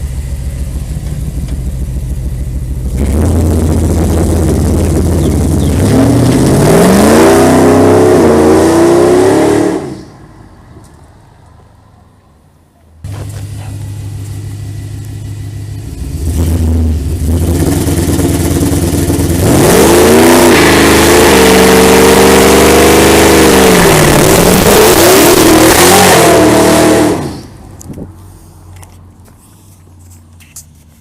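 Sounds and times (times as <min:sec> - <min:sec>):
truck engine revving hard: 0:02.9 - 0:10.2, 0:15.8 - 0:27.6.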